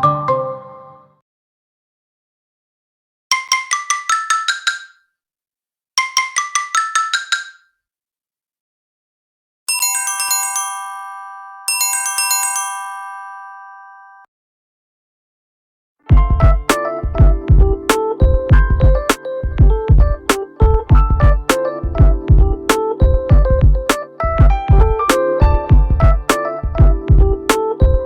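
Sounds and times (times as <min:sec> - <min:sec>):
mallet-like ringtone melody: 0:09.7 - 0:14.3, 0:16.1 - 0:28.0.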